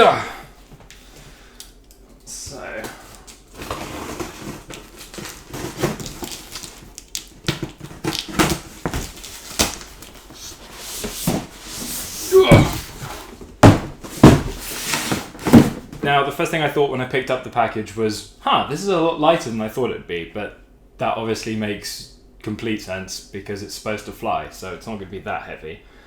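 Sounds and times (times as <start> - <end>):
parcel rustling and scraping: 2.2 - 16.0
thumps on parcel: 11.0 - 16.1.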